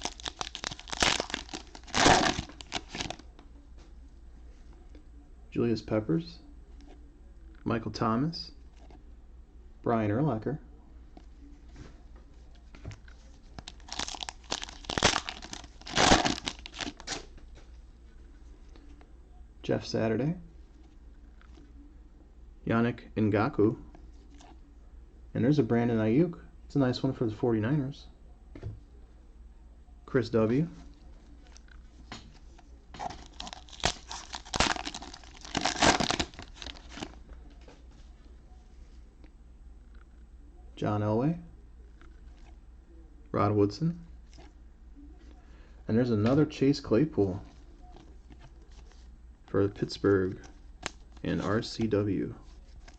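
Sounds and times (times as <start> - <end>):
trading cards being handled: 0.0 - 3.3, 11.2 - 17.8, 30.8 - 38.2
plastic wrapper crinkling: 0.0 - 3.4, 13.0 - 17.3, 31.3 - 37.6.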